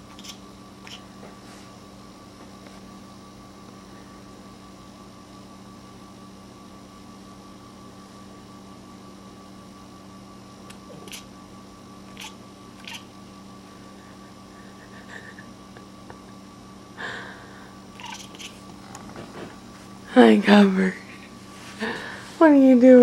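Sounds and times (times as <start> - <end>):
electrical hum: 0.0 - 23.0.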